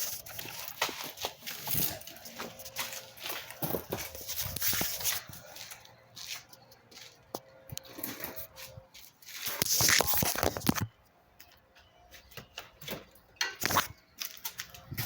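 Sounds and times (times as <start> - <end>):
chainsaw chain rustling and scraping: 0.0 - 7.1, 7.8 - 10.4.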